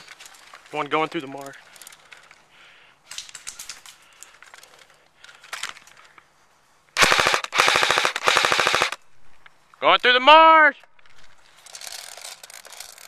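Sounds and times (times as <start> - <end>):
light rustling and crackling: 0.0 - 6.9
airsoft gun firing full auto: 7.0 - 9.0.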